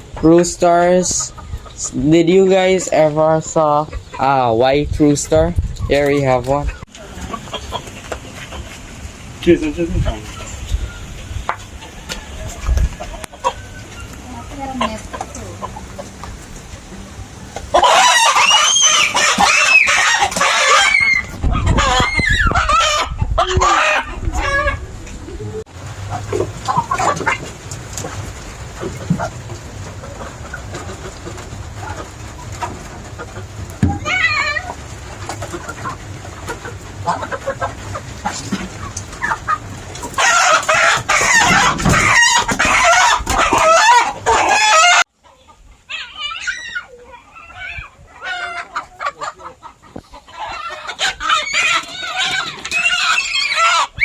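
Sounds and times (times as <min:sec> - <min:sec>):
chickens clucking: 0:00.0 - 0:54.0
roosters crowing: 0:10.2 - 0:16.3, 0:17.4 - 0:25.1, 0:26.0 - 0:45.1, 0:45.8 - 0:54.0
rooster crowing: 0:11.8 - 0:13.4.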